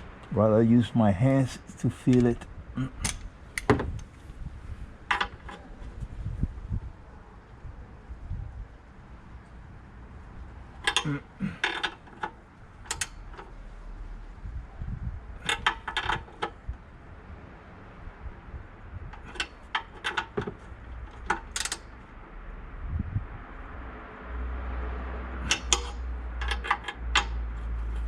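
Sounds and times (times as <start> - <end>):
ratchet wrench clicking: 10.8 - 12.3, 12.9 - 13.5, 21.2 - 21.9, 25.4 - 27.5.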